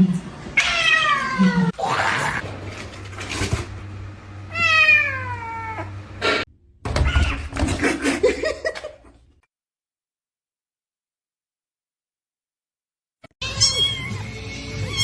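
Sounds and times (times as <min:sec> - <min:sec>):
cat meowing: 0:00.6 - 0:01.7, 0:04.5 - 0:06.0, 0:13.4 - 0:15.0.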